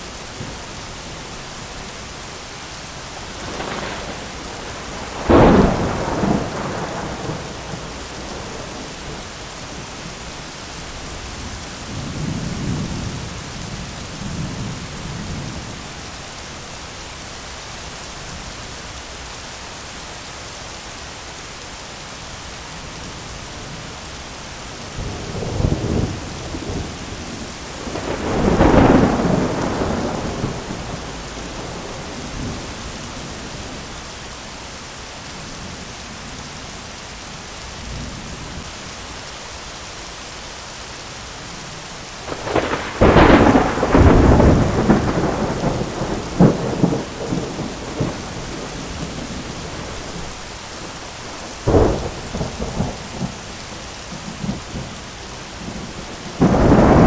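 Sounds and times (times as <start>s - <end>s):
steady rain hiss: 0.0s - 57.0s
thunder rumbling and cracking: 3.1s - 10.2s, 25.0s - 33.8s, 42.2s - 50.6s, 51.2s - 57.0s.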